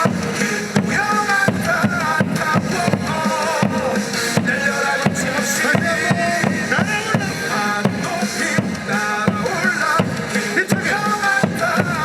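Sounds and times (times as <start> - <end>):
cheering song over loudspeakers: 0.0 - 12.0.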